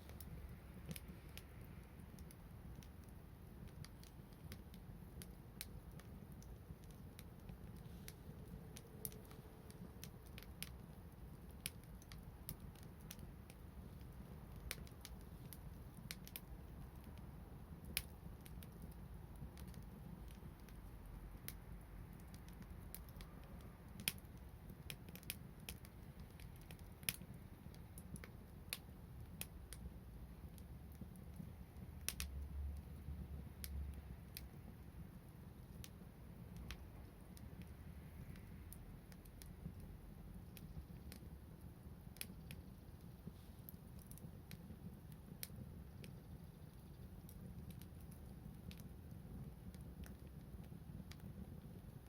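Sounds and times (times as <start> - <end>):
low steady rumble: 0.0 - 52.0
wood fire crackling: 0.0 - 52.0.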